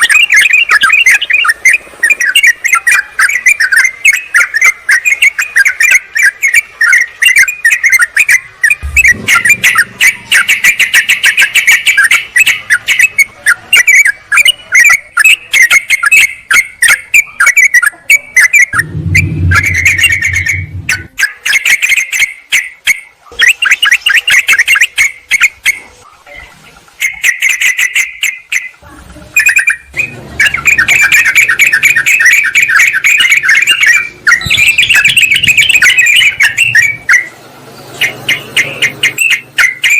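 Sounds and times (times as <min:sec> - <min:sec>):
birds chattering calls: 0:00.0 - 0:39.9
low rumble: 0:18.7 - 0:21.2.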